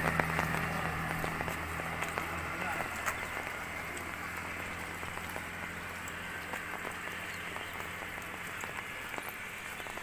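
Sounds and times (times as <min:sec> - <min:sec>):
light rain pattering: 0:00.0 - 0:10.0.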